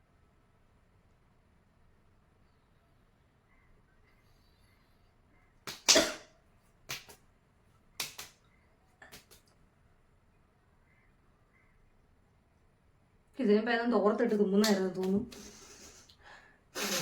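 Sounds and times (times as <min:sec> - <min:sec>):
person sniffing sharply: 0:15.4 - 0:16.2, 0:16.8 - 0:17.0.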